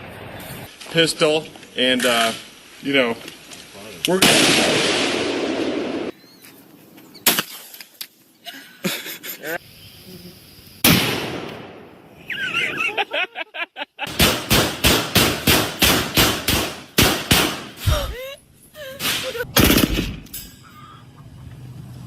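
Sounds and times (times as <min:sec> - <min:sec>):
gunshots: 0:04.2 - 0:06.1, 0:10.8 - 0:12.0, 0:14.1 - 0:17.9, 0:19.0 - 0:20.4
heavy echoing blast: 0:04.2 - 0:06.1, 0:19.0 - 0:20.4
rapid gunfire: 0:14.1 - 0:17.8.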